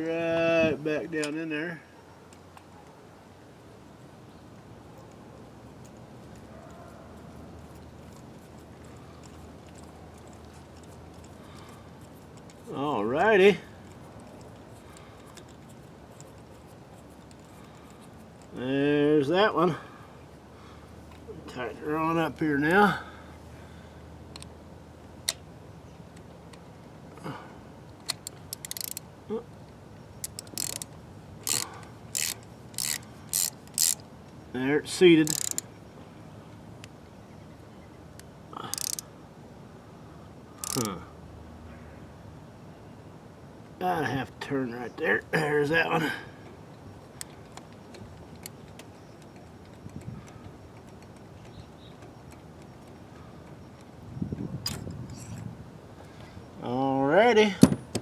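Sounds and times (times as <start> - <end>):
light clicks and ticks of tools: 4.9 - 6.9, 7.5 - 12.8, 13.8 - 18.6, 24.3 - 24.6, 27.2 - 35.7, 38.1 - 39.1, 40.6 - 41.0, 46.4 - 55.5
socket ratchet clicking: 28.0 - 29.0, 30.2 - 34.0, 35.2 - 35.7, 38.6 - 39.0, 40.6 - 41.0
ratchet back-swing rattles: 30.3 - 34.0, 35.2 - 35.7, 38.7 - 39.0, 40.6 - 41.0.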